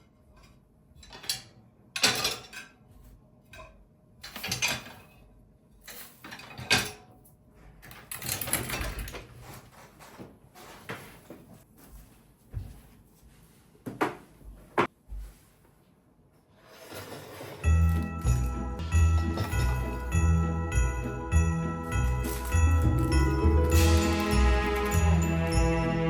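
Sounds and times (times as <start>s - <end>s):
rustling scrape: 16.5s - 17.9s.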